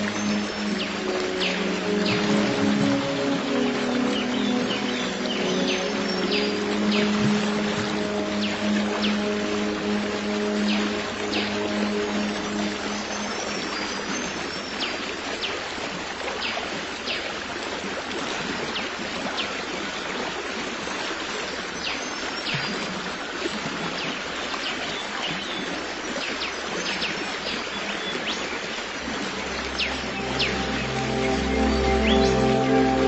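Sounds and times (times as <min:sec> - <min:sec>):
soft music: 0:00.0 - 0:15.0, 0:29.0 - 0:33.0
stream water flowing: 0:00.0 - 0:33.0.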